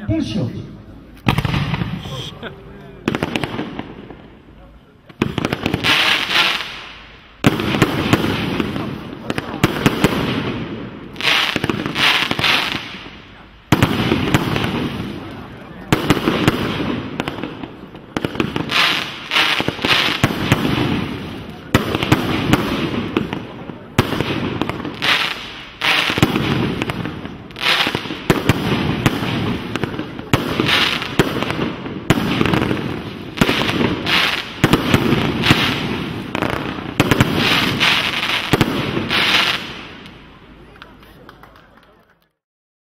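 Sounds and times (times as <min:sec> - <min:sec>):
firework shot launching: 0:01.2 - 0:02.3
firework bursting effects: 0:01.2 - 0:04.5, 0:05.1 - 0:40.8.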